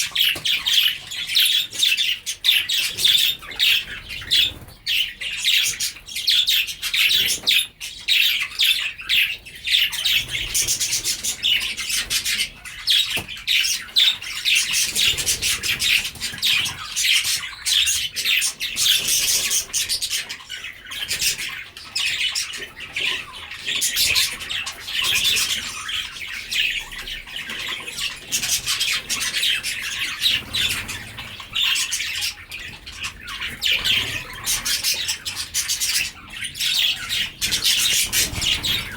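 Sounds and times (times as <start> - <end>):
budgerigars chattering and squawking: 0.0 - 38.9.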